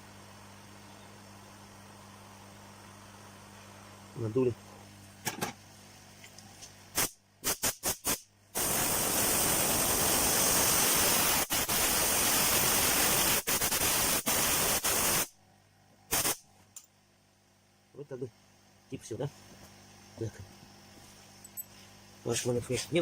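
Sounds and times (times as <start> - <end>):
air hissing from a nozzle: 7.0 - 15.3, 16.1 - 16.4.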